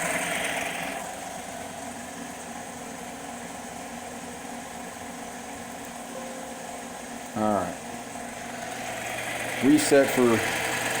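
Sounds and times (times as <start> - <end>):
spindle motor hum: 0.0 - 11.0
lathe hiss: 8.7 - 11.0.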